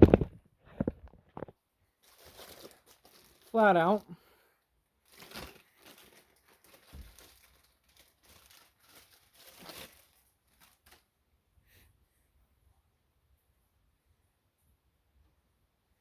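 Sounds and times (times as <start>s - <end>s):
packaging crinkling and rustling: 0.0s - 4.1s, 5.0s - 11.2s.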